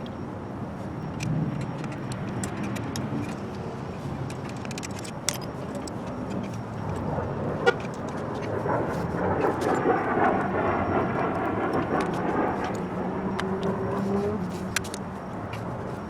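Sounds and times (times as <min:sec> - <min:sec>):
road traffic rumble: 0:00.0 - 0:16.0
metallic clicks of tools: 0:01.1 - 0:07.0.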